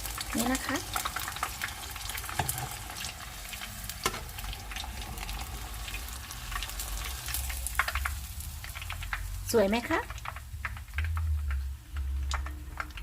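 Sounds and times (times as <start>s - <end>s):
hot oil sizzling: 0.0s - 13.0s.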